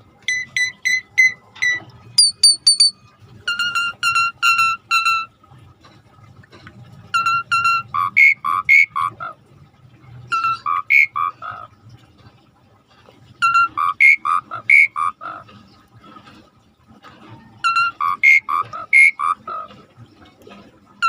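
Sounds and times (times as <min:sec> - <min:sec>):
starling singing: 0:00.3 - 0:05.3, 0:07.2 - 0:09.2, 0:10.3 - 0:11.7, 0:13.4 - 0:15.4, 0:17.6 - 0:19.5.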